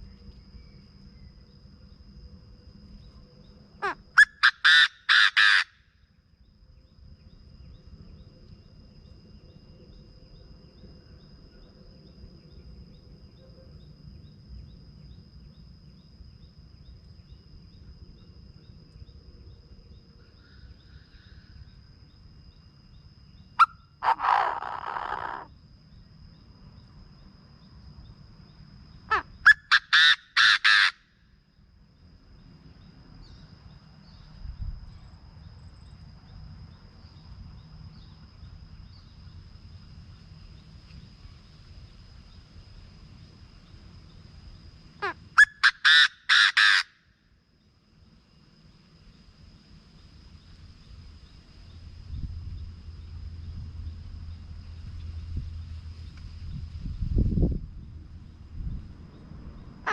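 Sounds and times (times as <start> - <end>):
faint high whine: 0.0 - 4.4, 5.7 - 29.5, 46.5 - 59.9
bird calling harsh notes: 3.8 - 5.7, 29.1 - 31.0, 45.0 - 46.9
rasping bird call: 3.8 - 5.8, 23.6 - 25.5, 29.1 - 31.0, 45.0 - 47.0.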